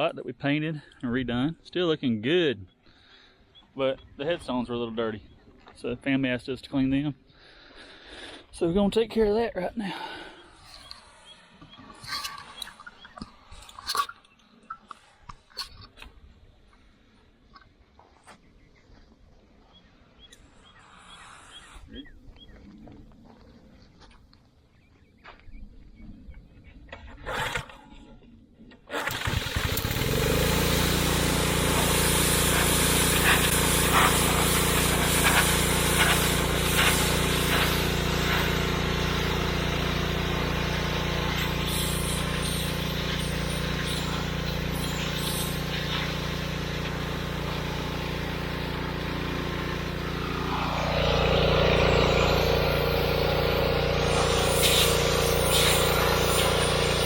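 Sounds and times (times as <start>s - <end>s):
pressure washer engine hum: 29.0s - 57.0s
water spray hissing: 29.2s - 57.0s.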